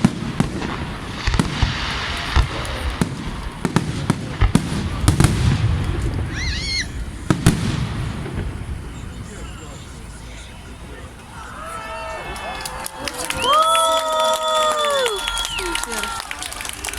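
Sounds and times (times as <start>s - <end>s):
fireworks bangs and crackles: 0.0s - 11.6s.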